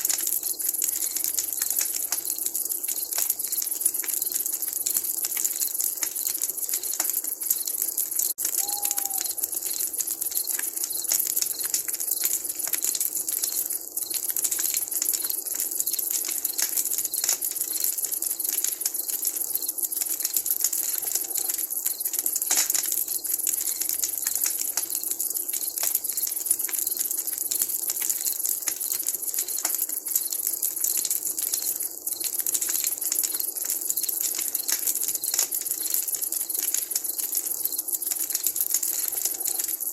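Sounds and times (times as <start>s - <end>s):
campfire crackling: 0.0s - 39.9s
owl call: 8.5s - 9.4s.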